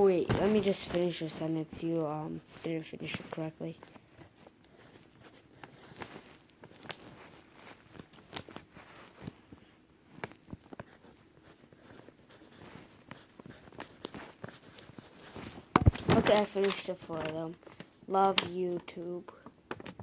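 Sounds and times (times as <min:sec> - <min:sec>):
pen scratching on paper: 0:04.2 - 0:06.1, 0:10.8 - 0:15.6.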